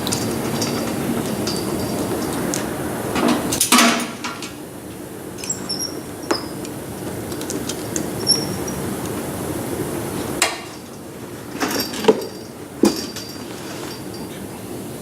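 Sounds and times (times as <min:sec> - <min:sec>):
steady shop hiss: 0:00.0 - 0:15.0
short high squeaks: 0:08.2 - 0:08.8.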